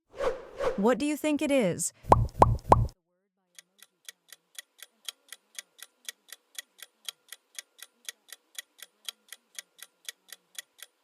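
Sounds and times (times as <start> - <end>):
timer ticking quickly: 2.1 - 3.0.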